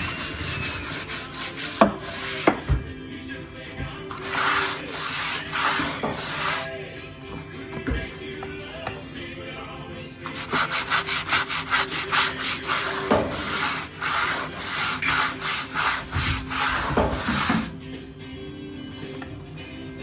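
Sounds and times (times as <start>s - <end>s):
rubbing on rough surface: 0.0s - 2.8s, 4.1s - 9.2s, 10.2s - 17.8s.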